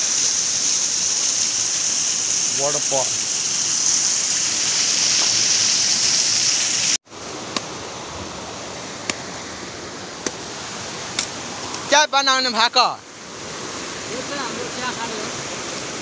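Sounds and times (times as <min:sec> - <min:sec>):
river water flowing: 0:00.0 - 0:16.0
waterfall rushing: 0:00.0 - 0:16.0.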